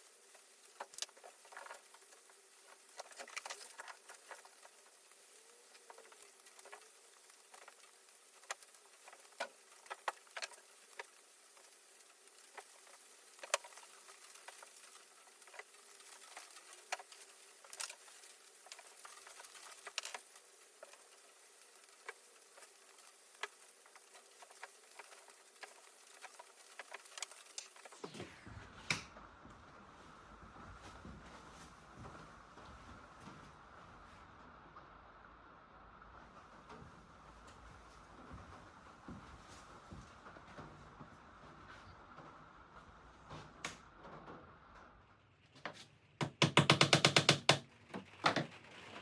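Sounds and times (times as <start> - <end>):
paint roller sticky crackle: 0.0 - 28.4.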